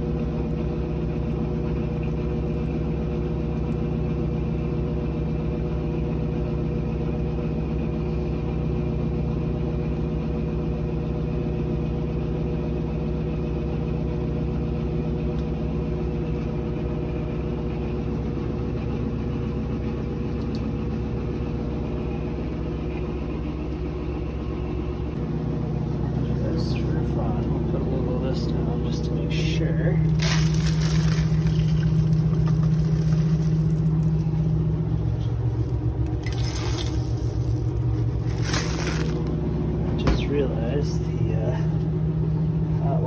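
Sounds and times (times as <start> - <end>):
drain snake motor humming: 25.1 - 41.9.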